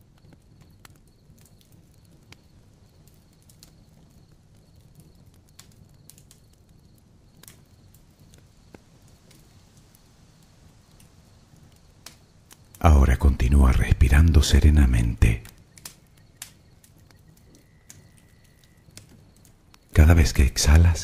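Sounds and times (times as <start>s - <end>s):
faint low rumble: 12.8s - 15.5s, 20.0s - 21.0s.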